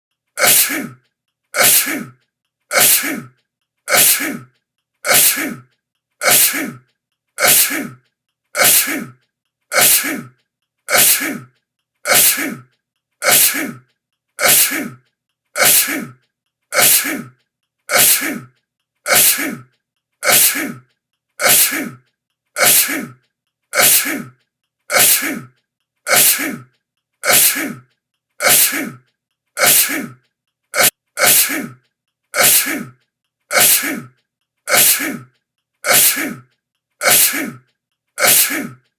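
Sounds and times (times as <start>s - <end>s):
person sneezing: 0.4s - 1.0s, 1.6s - 2.1s, 2.7s - 3.3s, 3.9s - 4.4s, 5.1s - 5.6s, 6.2s - 6.8s, 7.4s - 8.0s, 8.6s - 9.1s, 9.7s - 10.3s, 10.9s - 11.4s, 12.1s - 12.6s, 13.2s - 13.8s, 14.4s - 15.0s, 15.6s - 16.1s, 16.8s - 17.3s, 17.9s - 18.5s, 19.1s - 19.6s, 20.2s - 20.8s, 21.4s - 22.0s, 22.6s - 23.1s, 23.8s - 24.3s, 24.9s - 25.5s, 26.1s - 26.6s, 27.2s - 27.8s, 28.4s - 29.0s, 29.6s - 30.2s, 30.8s - 31.8s, 32.4s - 32.9s, 33.5s - 34.1s, 34.7s - 35.2s, 35.9s - 36.4s, 37.0s - 37.6s, 38.2s - 38.8s.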